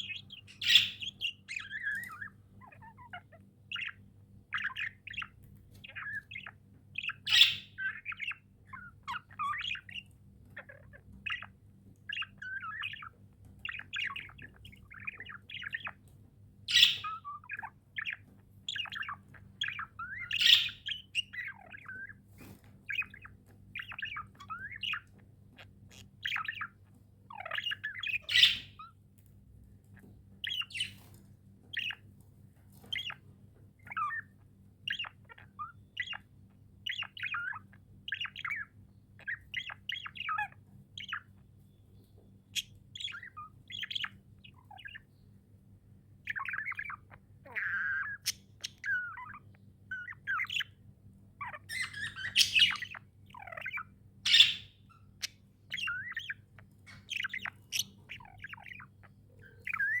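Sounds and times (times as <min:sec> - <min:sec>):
harsh bird squawks: 0:00.0 - 0:10.0, 0:16.7 - 0:29.0, 0:46.3 - 0:50.8, 0:51.4 - 1:00.0
budgerigars chirping and warbling: 0:00.0 - 0:29.1, 0:29.7 - 1:00.0
faint low hum: 0:00.0 - 1:00.0.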